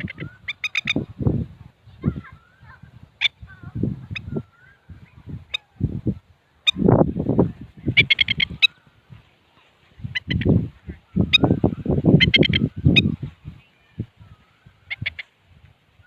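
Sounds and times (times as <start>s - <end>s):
birds alarm chirps: 0.0s - 1.2s, 2.0s - 5.8s, 7.9s - 9.1s, 10.0s - 15.3s.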